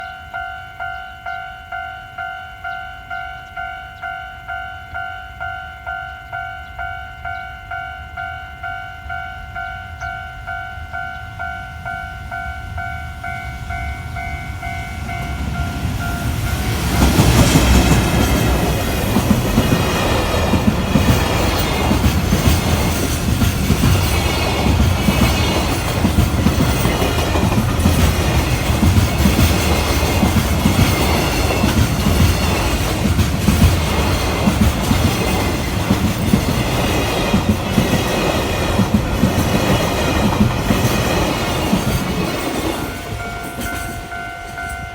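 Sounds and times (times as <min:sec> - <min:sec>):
freight train rumbling past: 0:01.7 - 0:44.9
wheels clacking over rail joints: 0:13.6 - 0:44.9
level crossing bell ringing: 0:41.9 - 0:44.9.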